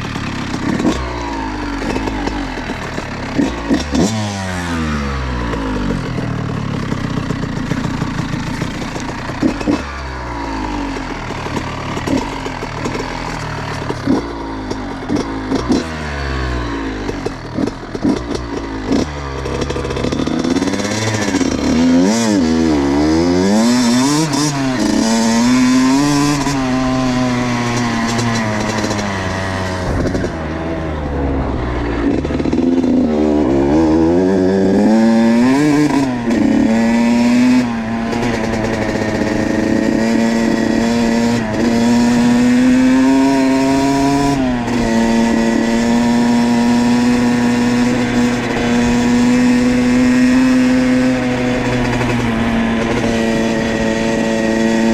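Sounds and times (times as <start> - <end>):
dirt bike engine revving: 0.0 - 54.9.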